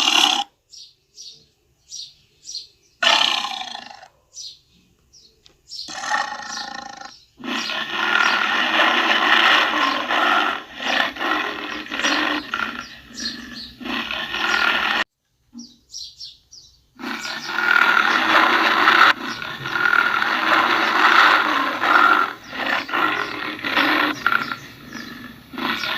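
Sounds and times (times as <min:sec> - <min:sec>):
tiger roaring: 0:00.0 - 0:00.5, 0:03.0 - 0:04.1, 0:05.9 - 0:15.1, 0:17.0 - 0:25.9.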